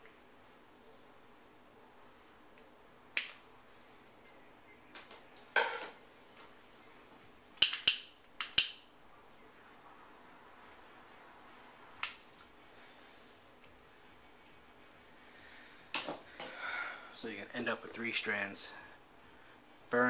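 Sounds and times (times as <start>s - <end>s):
faint hiss of lighter flame: 7.6s - 12.5s.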